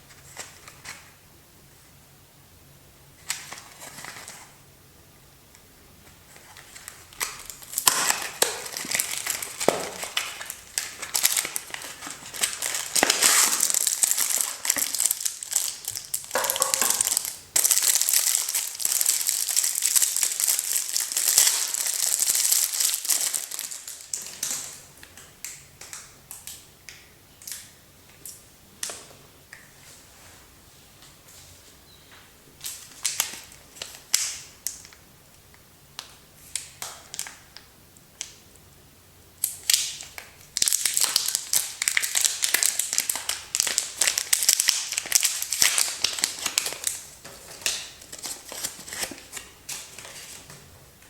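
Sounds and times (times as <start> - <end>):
wrapper crinkling: 6.4 - 24.8, 32.6 - 35.0, 39.6 - 50.6.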